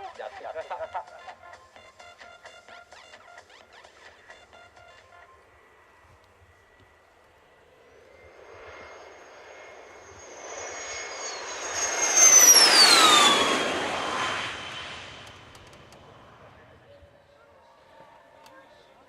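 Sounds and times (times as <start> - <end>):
jet flying past: 5.3 - 17.2.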